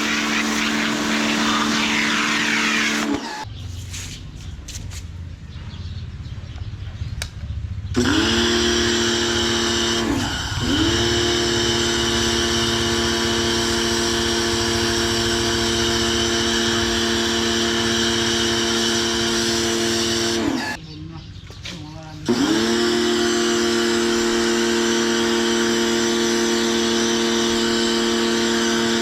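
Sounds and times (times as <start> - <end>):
pressure washer motor whine: 0.0 - 3.5, 7.9 - 20.8, 22.2 - 29.0.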